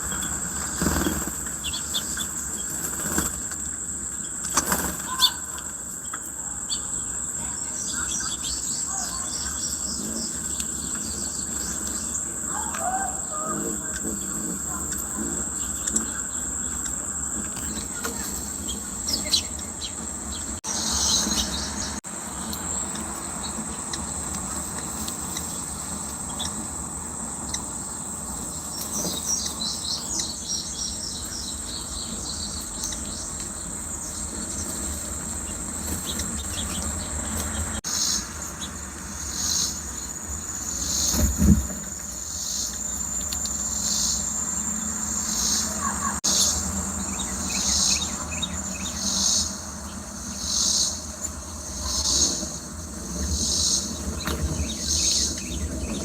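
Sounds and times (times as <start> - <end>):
bird chirps: 4.0 - 26.8, 27.4 - 41.5
high-pitched insect trill: 37.9 - 56.0.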